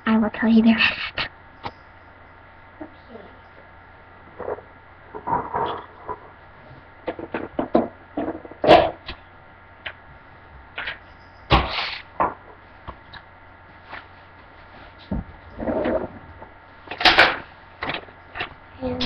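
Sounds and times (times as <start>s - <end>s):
knocks and clatters of handling: 7.0s - 9.0s, 13.9s - 18.6s.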